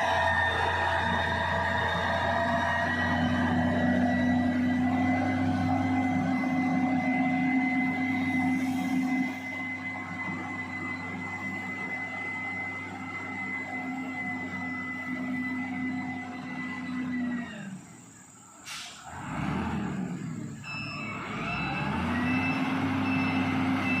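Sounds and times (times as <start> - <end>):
high whine: 0.0 - 18.1
heavy machinery diesel engine: 0.0 - 24.0.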